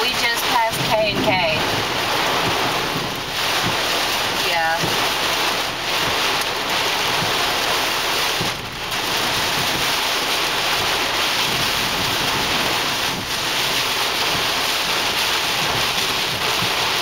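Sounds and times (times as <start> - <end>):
heavy rain on car roof: 0.0 - 17.0.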